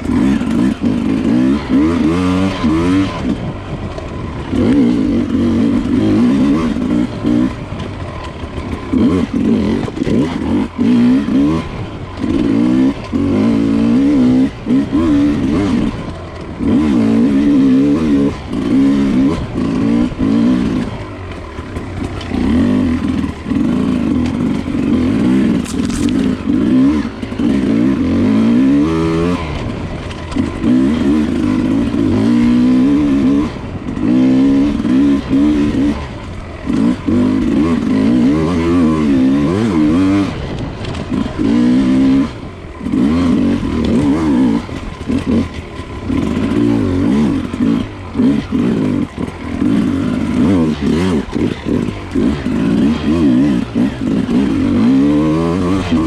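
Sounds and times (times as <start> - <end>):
dirt bike engine revving: 0.0 - 56.0.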